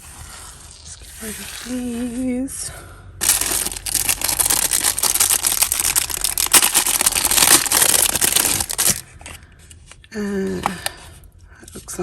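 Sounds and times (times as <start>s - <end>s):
jewellery clattering: 3.2s - 9.0s.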